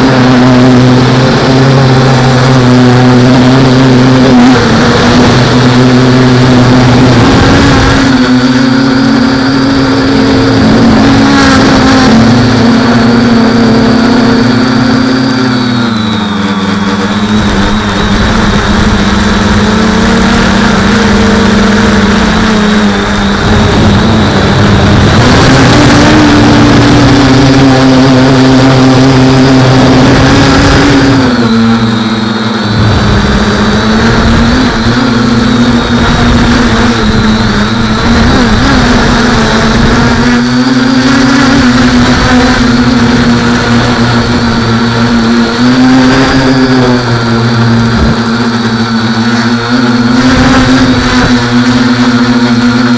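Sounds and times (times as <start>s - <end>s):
drone propellers buzzing: 0.0s - 52.9s.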